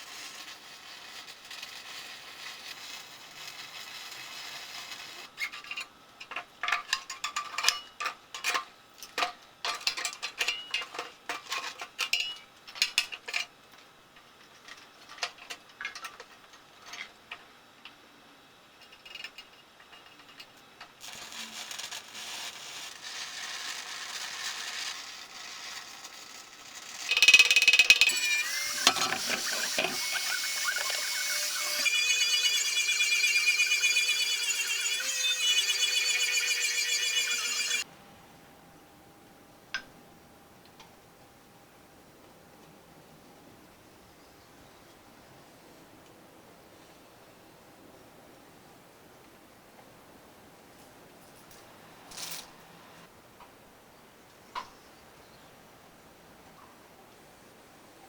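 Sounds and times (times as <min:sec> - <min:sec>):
machine winding down: 0:27.1 - 0:37.9.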